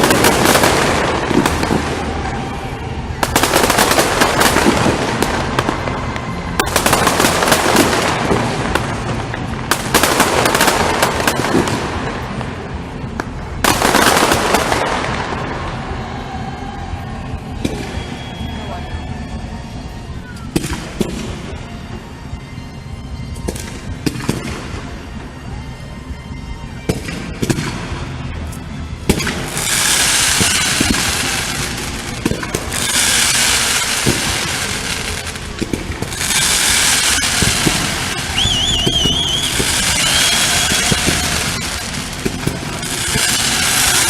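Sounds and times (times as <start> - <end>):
warbling firework whistle: 0.0 - 12.1, 13.6 - 21.8, 29.1 - 44.0
firework bangs and booms: 0.0 - 15.9, 29.1 - 44.0
dense firework crackling: 0.0 - 18.8, 29.0 - 44.0.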